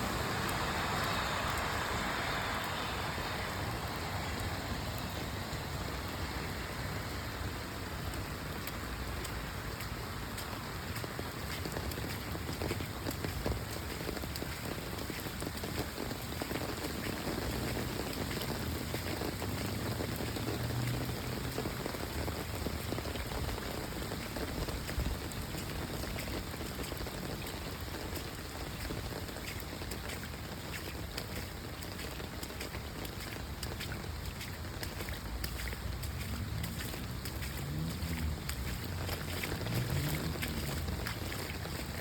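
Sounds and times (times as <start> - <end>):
rain falling steadily: 0.0 - 42.0.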